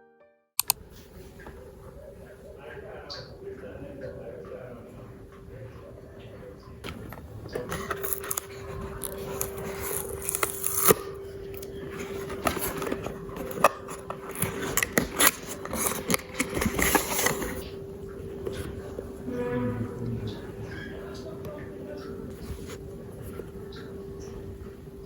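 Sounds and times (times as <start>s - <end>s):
steady hum: 0.6s - 25.0s
small objects clicking and scraping: 7.7s - 11.0s.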